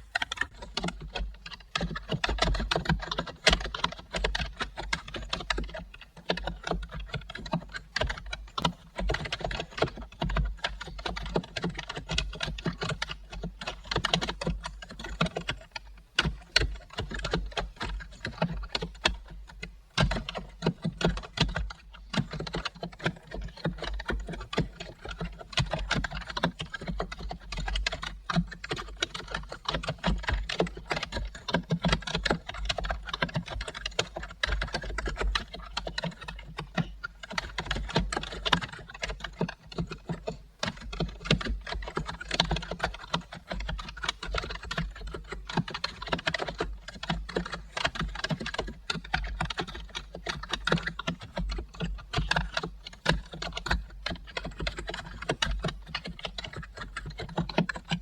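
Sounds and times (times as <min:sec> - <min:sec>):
fast keyboard typing: 0:00.0 - 0:58.0.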